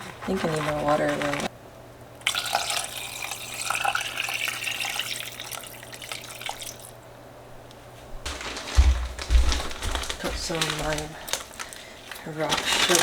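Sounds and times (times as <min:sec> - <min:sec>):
kitchen tap running: 0:02.2 - 0:07.0, 0:08.2 - 0:13.0
water filling a container: 0:02.2 - 0:07.0.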